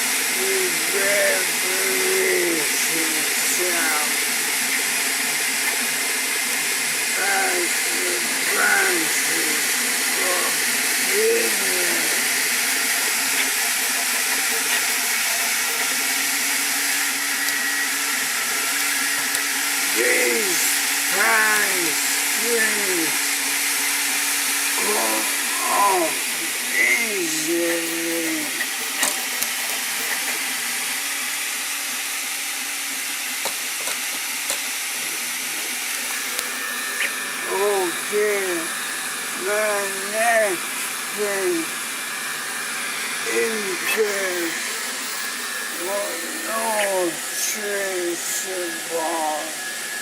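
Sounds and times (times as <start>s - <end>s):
printer fan hiss: 0.0s - 50.0s
pitched whine gliding: 7.1s - 31.7s, 35.1s - 50.0s.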